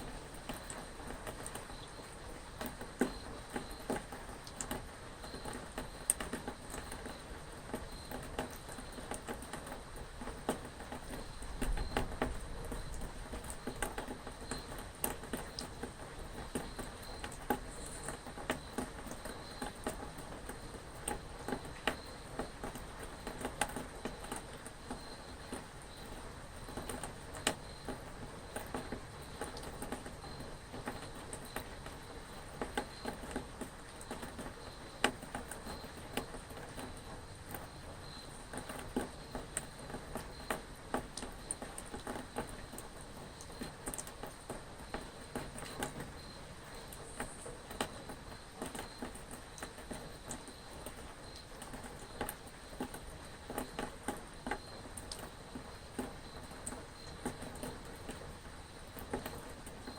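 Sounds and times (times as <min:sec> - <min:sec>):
rain pattering: 0:00.0 - 0:59.9
raindrops ticking sharply: 0:00.0 - 0:59.9.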